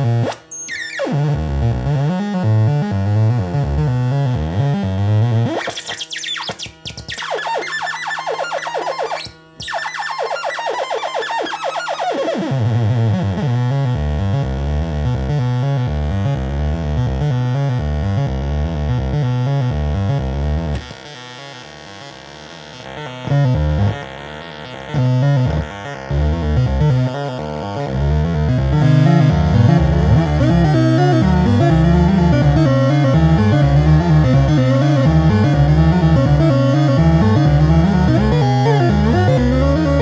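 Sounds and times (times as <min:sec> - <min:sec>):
synthesizer low note sequence: 0:24.9 - 0:40.0
synthesizer sweeping glides: 0:28.5 - 0:40.0.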